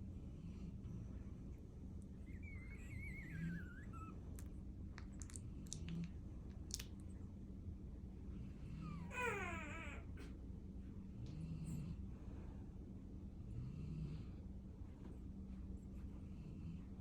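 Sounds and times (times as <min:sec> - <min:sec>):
puppy squeaking: 0:02.2 - 0:04.2.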